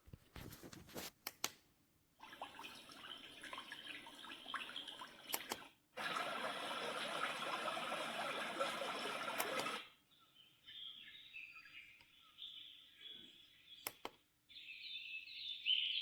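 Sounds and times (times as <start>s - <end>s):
running dripping water from speaker: 2.2s - 9.9s.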